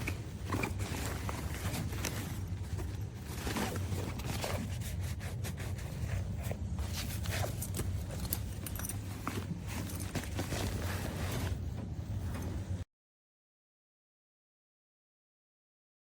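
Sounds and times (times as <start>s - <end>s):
rustling handling noise: 0.0s - 12.8s
steady low hum: 0.0s - 12.8s.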